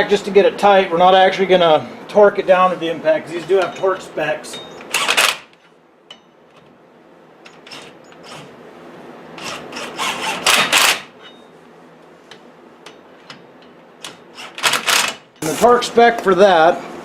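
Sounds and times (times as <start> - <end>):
impact wrench bursts: 4.8 - 5.6, 7.5 - 8.6, 9.4 - 11.4, 14.0 - 15.8.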